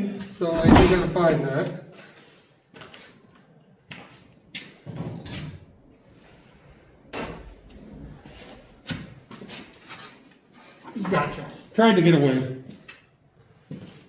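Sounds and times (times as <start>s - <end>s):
rumbling handling noise: 0.4s - 1.6s, 5.2s - 9.8s
objects knocking on garage floor: 0.6s - 1.4s.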